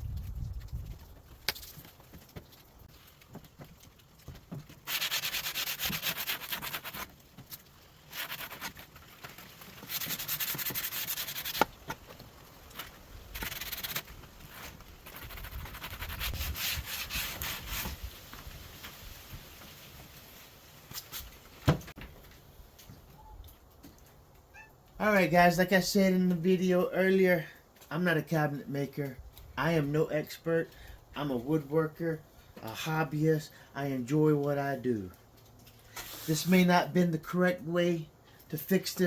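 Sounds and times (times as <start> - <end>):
wood being sanded: 4.9 - 7.0, 15.1 - 18.0.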